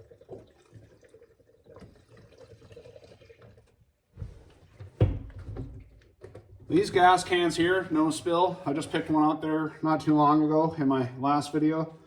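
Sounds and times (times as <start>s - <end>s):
fuel trickling into tank: 0.0s - 7.3s.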